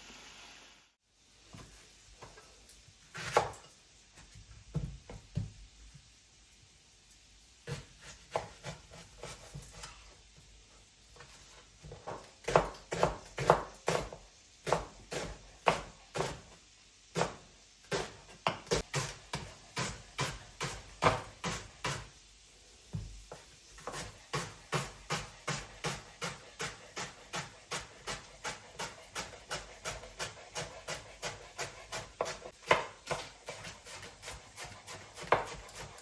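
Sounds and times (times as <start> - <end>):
knife chopping on wooden board: 3.2 - 3.6, 7.7 - 9.9, 11.8 - 16.4, 17.2 - 22.1, 23.0 - 36.0.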